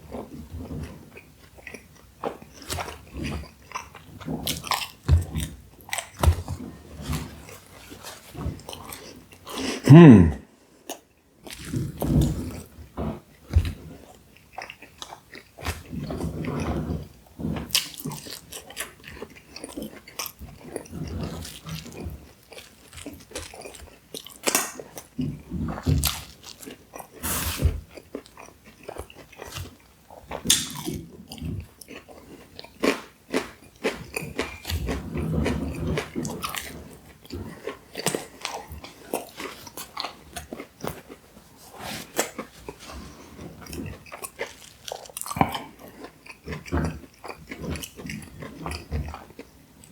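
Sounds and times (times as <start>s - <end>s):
person chewing and biting: 1.4s - 10.2s, 17.7s - 49.9s
wet mouth sounds: 9.6s - 10.4s.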